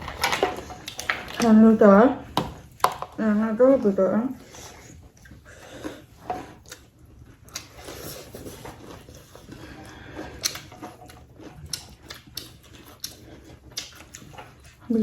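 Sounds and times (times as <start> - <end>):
chewing and biting: 5.0 - 14.9.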